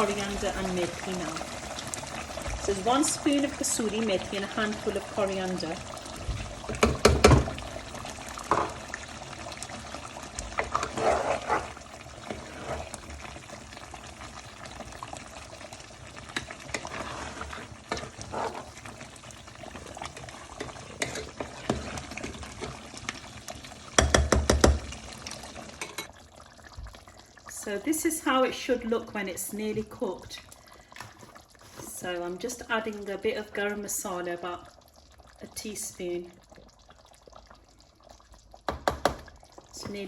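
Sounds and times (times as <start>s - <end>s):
spoon stirring and scraping pot: 10.4s - 13.4s, 16.1s - 23.2s, 25.6s - 26.2s, 31.0s - 32.0s.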